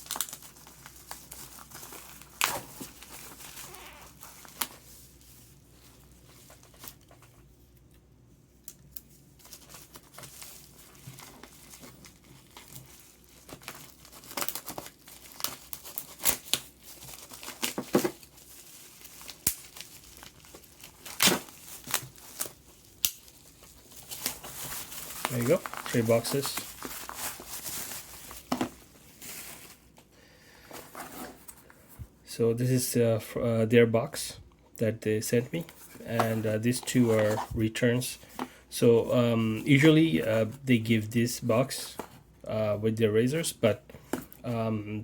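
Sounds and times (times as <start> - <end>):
packaging crinkling and tearing: 0.0 - 5.4, 8.6 - 30.1, 35.5 - 38.4.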